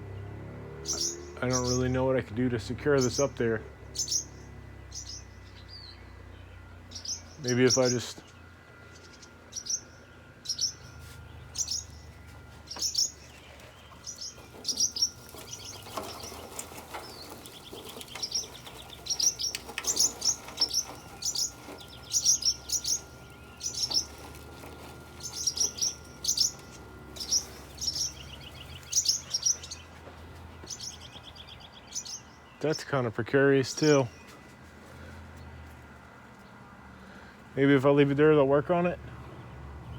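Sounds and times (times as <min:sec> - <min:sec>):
swallows alarm calls: 0:00.8 - 0:02.1, 0:02.8 - 0:32.8
buzzy bird chattering: 0:12.8 - 0:24.4, 0:25.2 - 0:29.8.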